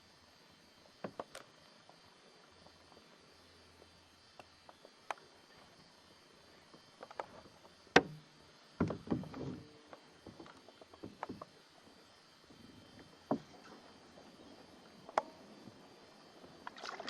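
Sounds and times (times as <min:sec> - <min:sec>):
paddle knocking against canoe: 0:07.1 - 0:12.0, 0:12.9 - 0:15.5
paddle splashes: 0:11.0 - 0:17.0.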